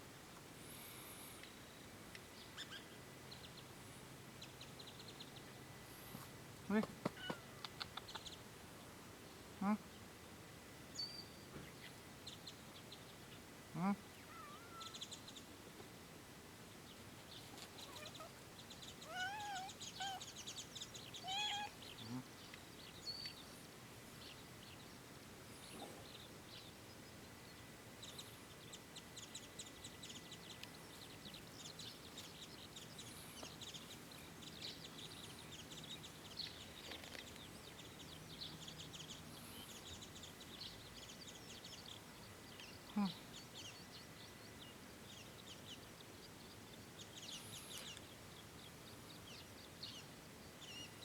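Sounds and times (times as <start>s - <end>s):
birds calling: 6.7s - 8.4s, 17.4s - 22.6s
short gliding bird calls: 19.0s - 20.3s.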